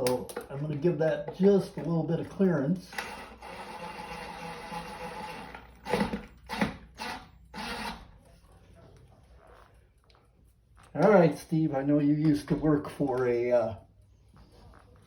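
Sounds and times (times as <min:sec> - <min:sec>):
cordless impact drill driving screw: 0:03.0 - 0:08.0.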